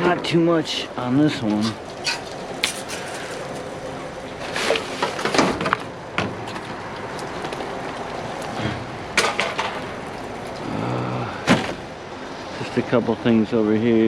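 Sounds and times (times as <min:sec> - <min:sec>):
outdoor background noise: 0:00.0 - 0:14.0
items clattering in a dumpster: 0:01.0 - 0:11.9.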